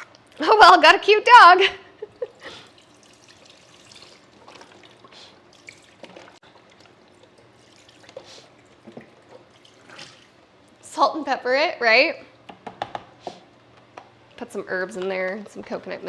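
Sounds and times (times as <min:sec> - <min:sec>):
liquid pouring and dripping: 0:02.2 - 0:10.8.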